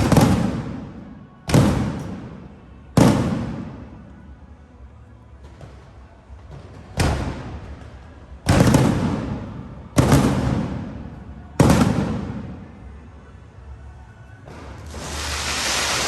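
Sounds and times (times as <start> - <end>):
firework shells booming: 0.0 - 4.0, 8.4 - 12.7.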